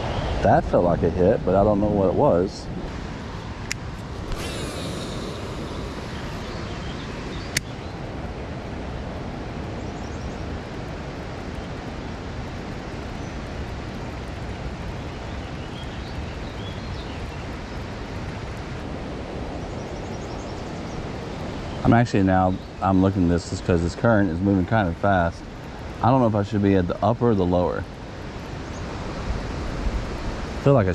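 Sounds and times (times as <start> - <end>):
waterfall roaring: 2.9 - 8.8
sharp click: 7.4 - 7.8.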